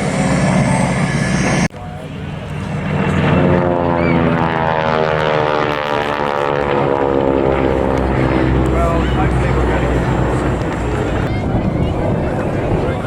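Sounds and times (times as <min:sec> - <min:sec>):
propeller aircraft flying past: 0:00.0 - 0:13.0.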